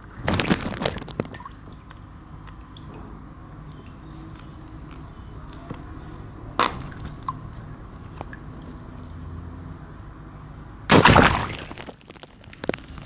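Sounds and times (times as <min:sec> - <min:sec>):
balloons popping: 0:10.9 - 0:13.0.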